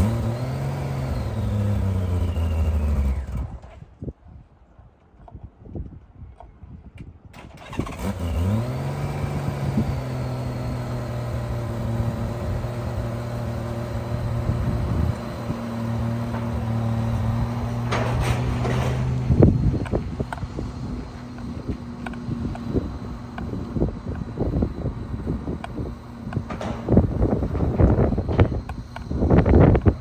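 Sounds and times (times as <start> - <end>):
motorcycle engine starting and idling: 0.0 - 3.9, 7.4 - 30.0.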